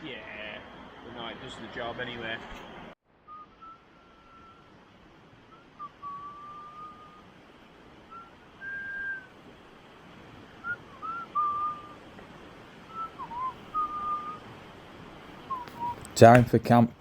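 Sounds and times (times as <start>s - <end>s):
person whistling a tune: 3.3s - 4.7s, 5.5s - 7.3s, 8.1s - 9.4s, 10.6s - 12.1s, 12.9s - 14.5s, 15.5s - 16.1s.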